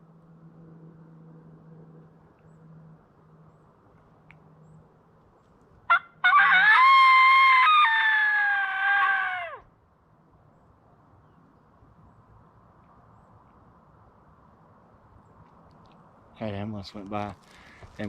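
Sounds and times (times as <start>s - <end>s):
coyote howler call: 5.9s - 9.7s.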